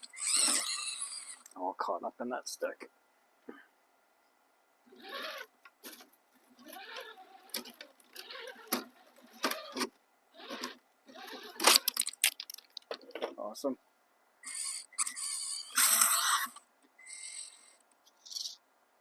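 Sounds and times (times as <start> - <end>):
electric motor whirring: 4.9 - 5.5, 14.5 - 17.6
sharp clicks and crackles: 11.6 - 13.3.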